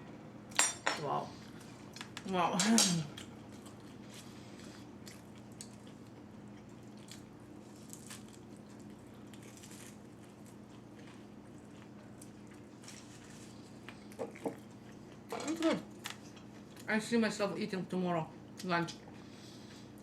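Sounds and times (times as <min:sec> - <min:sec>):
chewing food: 0:03.1 - 0:16.9.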